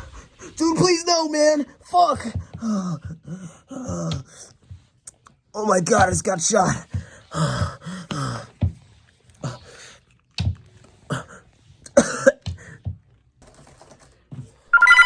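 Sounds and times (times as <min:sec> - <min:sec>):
man coughing: 0:11.9 - 0:12.6.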